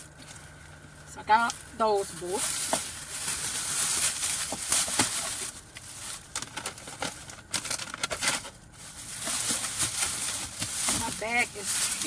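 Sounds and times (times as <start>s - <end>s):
plastic bag rustling: 0.0s - 12.0s.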